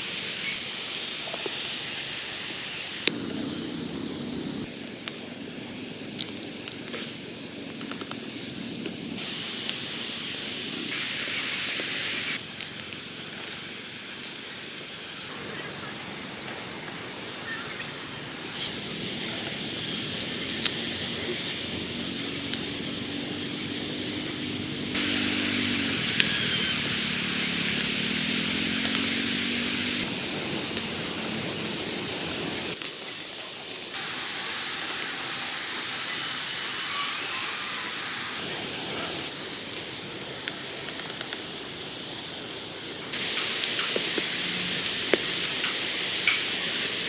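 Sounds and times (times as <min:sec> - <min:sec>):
steady outdoor hiss: 0:00.0 - 0:47.0
faint high chirps: 0:25.0 - 0:30.0, 0:34.0 - 0:38.4.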